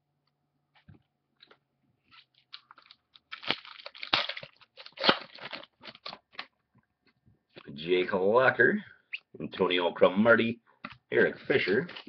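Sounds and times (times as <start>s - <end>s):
crinkling wrapper: 1.4s - 6.6s, 11.5s - 12.0s.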